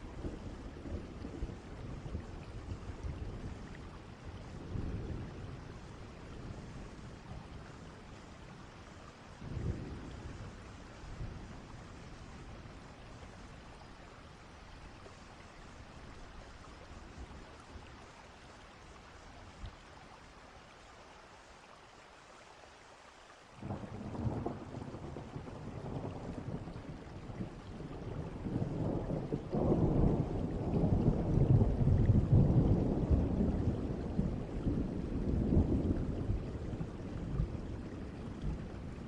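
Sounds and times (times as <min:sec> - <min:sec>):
thunder crack and rumble: 0:00.0 - 0:08.3, 0:23.6 - 0:39.0
soft steady rain: 0:00.0 - 0:39.0.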